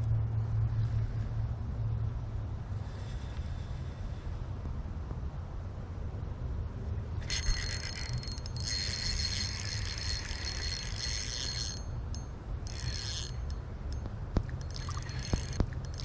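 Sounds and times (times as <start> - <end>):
low wind rumble: 0.0 - 16.0
fishing reel whirring: 7.2 - 16.0.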